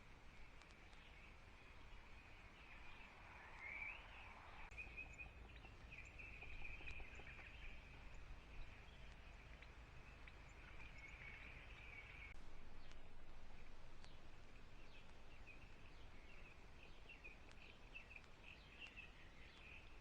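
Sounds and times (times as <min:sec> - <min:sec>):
distant birdsong chorus: 0:00.0 - 0:20.0
soft hiss: 0:00.0 - 0:20.0
soft clicks: 0:12.3 - 0:16.4, 0:17.1 - 0:20.0.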